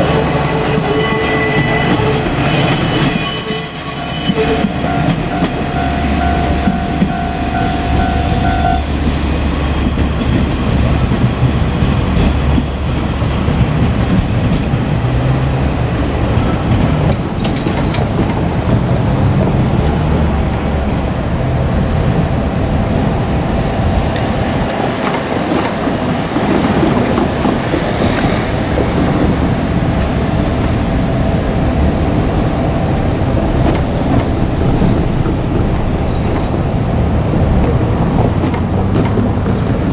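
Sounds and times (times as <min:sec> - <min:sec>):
steady tone: 0:00.0 - 0:10.0
diesel railcar rumble: 0:00.0 - 0:39.9.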